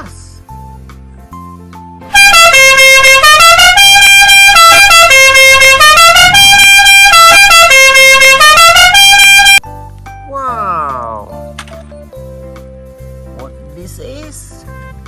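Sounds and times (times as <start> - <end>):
multi-tone bus horn melody: 2.1 - 9.6.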